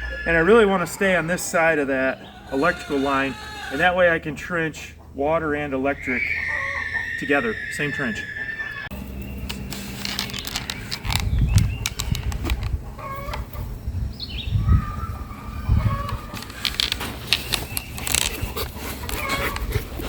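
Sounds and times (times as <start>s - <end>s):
chickens clucking: 0.0s - 8.9s, 10.4s - 20.0s
digging tool scraping soil: 16.1s - 20.0s.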